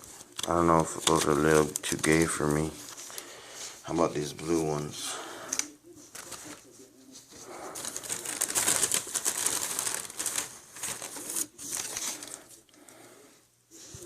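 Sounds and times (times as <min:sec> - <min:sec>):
plastic packet crinkling: 0:00.0 - 0:04.8, 0:05.5 - 0:06.7, 0:07.4 - 0:12.6.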